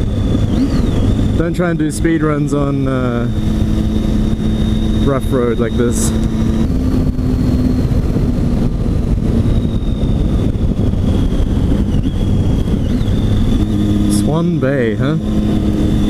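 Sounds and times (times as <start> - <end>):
motorcycle engine running: 0.0 - 16.0
wind and road noise: 0.0 - 16.0.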